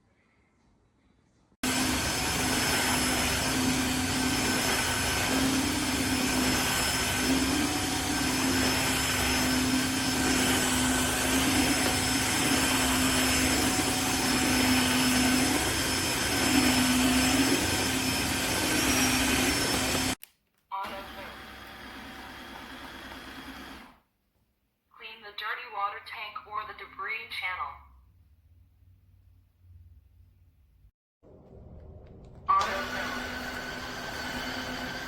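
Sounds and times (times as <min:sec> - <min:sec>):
floor cleaner motor running: 0:01.6 - 0:20.2, 0:20.8 - 0:23.9, 0:32.5 - 0:35.0.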